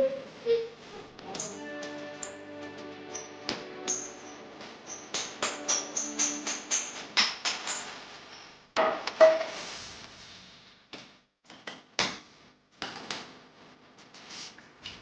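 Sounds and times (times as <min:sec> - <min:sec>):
background music: 0:01.1 - 0:08.0
sharp percussion hits: 0:01.3 - 0:08.0.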